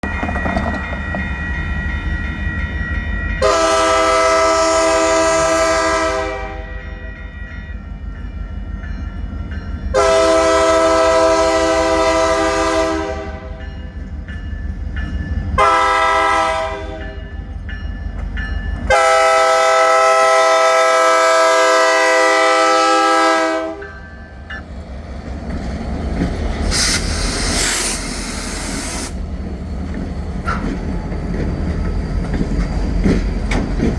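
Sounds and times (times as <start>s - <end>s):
locomotive air horn blasts: 3.4s - 6.8s, 9.9s - 13.6s, 15.6s - 17.1s, 18.9s - 24.0s
locomotive engine running: 23.1s - 33.9s.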